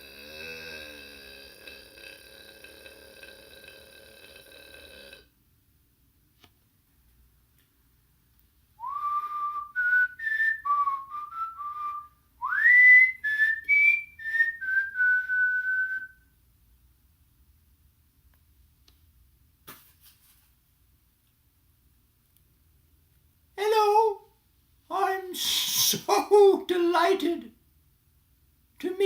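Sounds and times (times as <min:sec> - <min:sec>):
faint steady hum: 0:00.0 - 0:29.0
person whistling a tune: 0:08.8 - 0:16.2.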